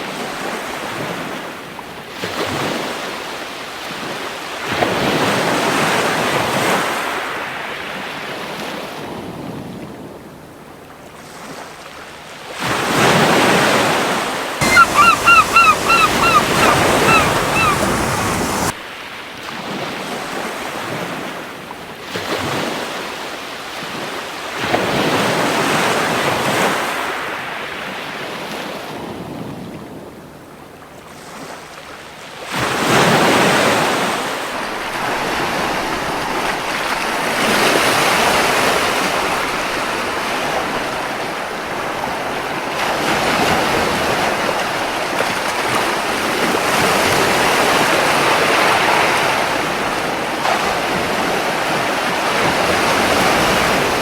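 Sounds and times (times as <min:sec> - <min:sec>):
seagull calls: 0:14.6 - 0:18.7
ocean surf washing onto beach: 0:14.6 - 0:18.8.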